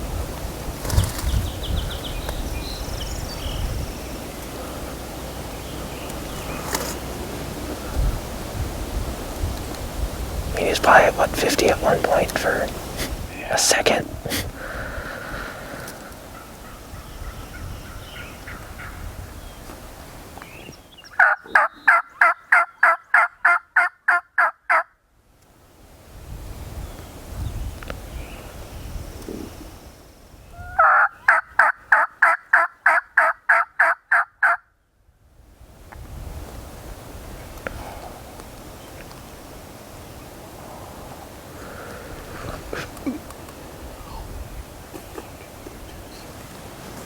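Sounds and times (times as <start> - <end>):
wind rumbling on microphone: 0.0 - 20.8, 25.9 - 30.8, 35.2 - 47.0
low outdoor background: 0.0 - 26.0
small birds chirping: 0.8 - 8.1, 14.2 - 19.8, 20.4 - 22.5
turkey yelps: 21.2 - 24.8, 30.6 - 34.6.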